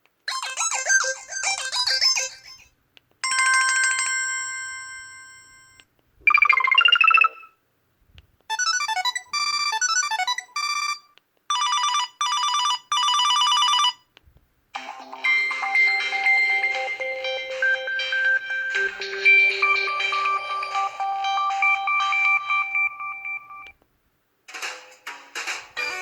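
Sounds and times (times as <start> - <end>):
melodic phone jingle: 3.2 - 7.5, 14.8 - 23.7
rapid beeping: 6.3 - 7.5, 15.4 - 23.7
short warbling tone: 6.3 - 7.5
phone chime: 15.2 - 23.7.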